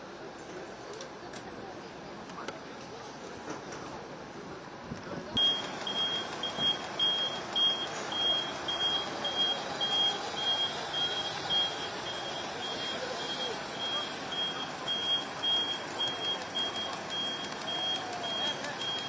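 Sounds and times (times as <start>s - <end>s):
outdoor street noise: 0.0s - 19.0s
high electronic beep: 5.4s - 19.0s.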